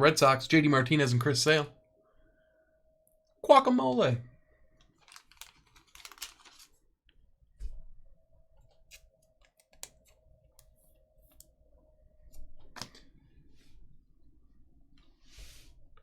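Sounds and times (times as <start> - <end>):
trading cards clicking and rustling: 4.8 - 6.8.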